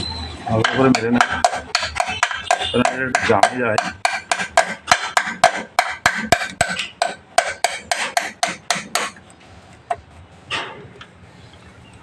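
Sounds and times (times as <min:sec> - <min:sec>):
hammer tapping on bolt: 0:00.6 - 0:09.2.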